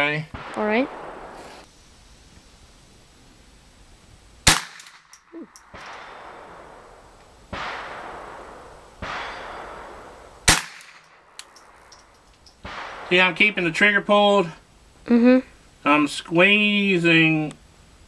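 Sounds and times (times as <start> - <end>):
dull echoing bangs: 0.3 - 1.6, 5.7 - 11.4, 12.6 - 13.8
rifle shots: 0.3 - 1.6, 4.4 - 6.9, 7.5 - 11.8, 12.6 - 13.8.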